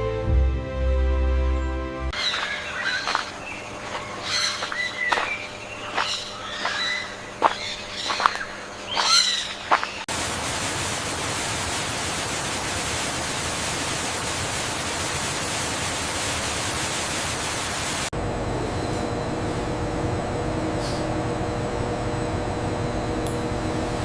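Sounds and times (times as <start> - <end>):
loud static hiss: 2.2 - 18.1.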